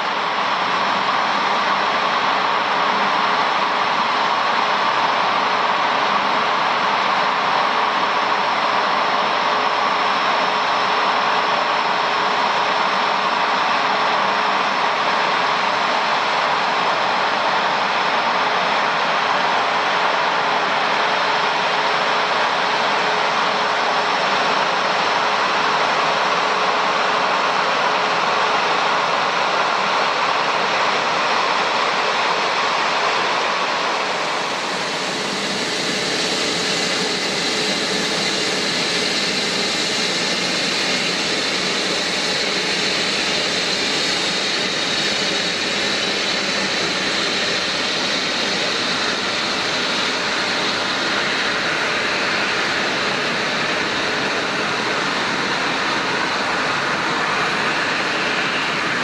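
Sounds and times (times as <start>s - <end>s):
jet engine roar with high whine: 0.0s - 59.0s.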